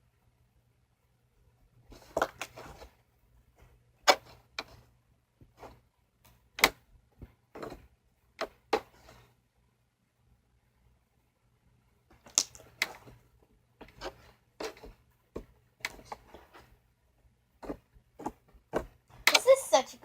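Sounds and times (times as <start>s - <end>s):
slime popping and crackling: 12.2s - 12.9s.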